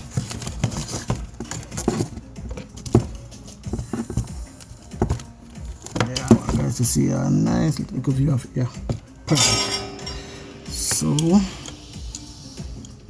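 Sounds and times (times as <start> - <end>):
objects clicking and tapping on workbench: 0.1 - 6.7.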